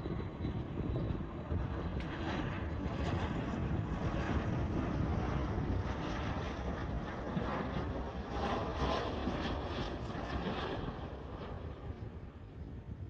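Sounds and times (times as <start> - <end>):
jet engines rumbling: 0.0 - 13.0
wind buffeting microphone: 0.0 - 13.0.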